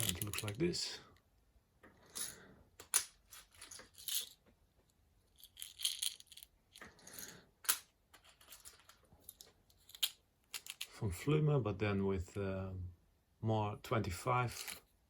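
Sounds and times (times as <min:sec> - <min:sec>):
small metal parts clicking: 0:00.0 - 0:00.6, 0:02.0 - 0:04.4, 0:05.4 - 0:10.9.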